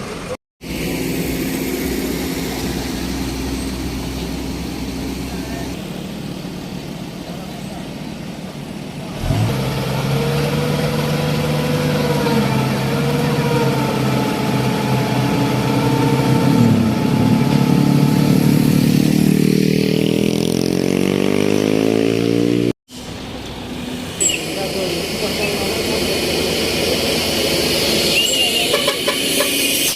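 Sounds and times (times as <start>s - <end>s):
vehicle engine revving: 9.0s - 22.8s.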